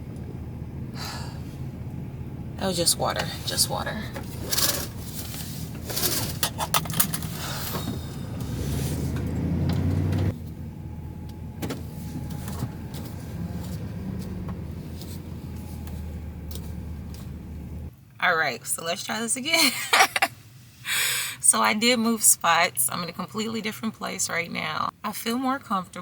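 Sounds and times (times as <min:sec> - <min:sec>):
van engine humming: 0:00.0 - 0:18.0
clattering and rattling: 0:04.1 - 0:10.3.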